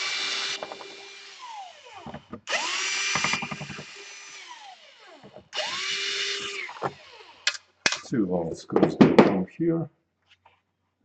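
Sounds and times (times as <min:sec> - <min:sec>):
electric screwdriver motor whine: 0:00.0 - 0:07.6.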